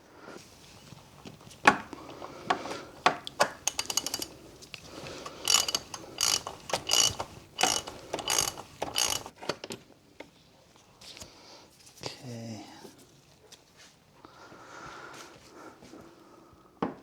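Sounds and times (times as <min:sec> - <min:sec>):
ratchet wrench pawl clicking: 0:00.8 - 0:09.3.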